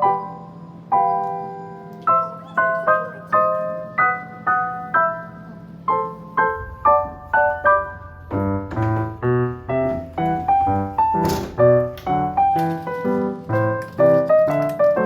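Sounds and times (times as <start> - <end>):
piano music: 0.0 - 15.0.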